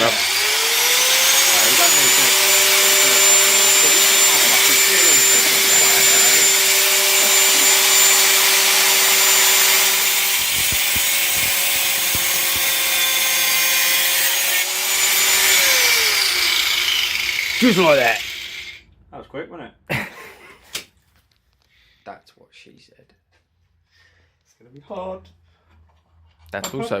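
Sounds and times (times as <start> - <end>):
electric grinder grinding metal: 0.0 - 18.8.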